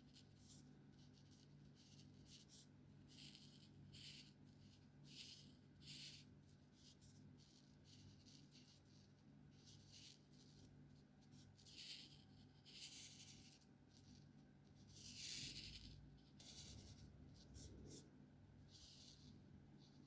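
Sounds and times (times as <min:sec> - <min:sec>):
marker scratching on paper: 0:00.0 - 0:20.0.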